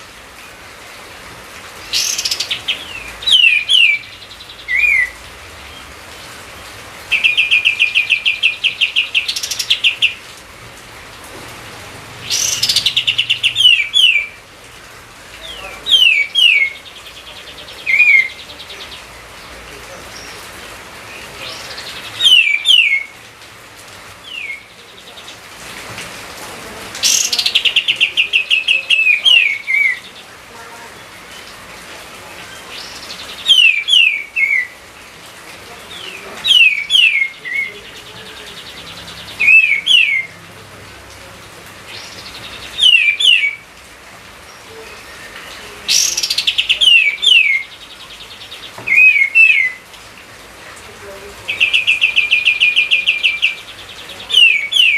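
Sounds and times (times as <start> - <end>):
songbird whistling: 2.0 - 5.2, 22.2 - 23.1, 39.4 - 40.3, 42.8 - 43.6, 48.9 - 49.8.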